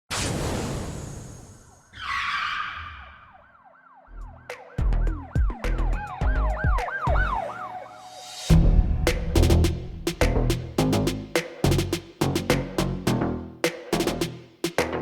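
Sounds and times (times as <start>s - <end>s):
siren-like wail sweeping: 1.5s - 9.0s
heavy bass drum hits: 8.5s - 12.6s.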